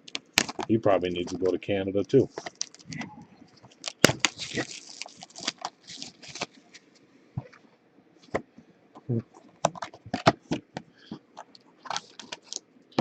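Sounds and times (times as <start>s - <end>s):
trading cards clicking and rustling: 9.4s - 12.6s.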